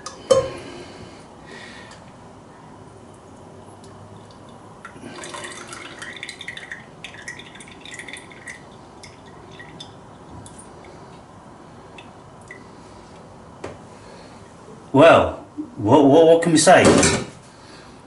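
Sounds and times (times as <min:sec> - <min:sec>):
drips: 0:03.1 - 0:11.2, 0:11.9 - 0:13.3.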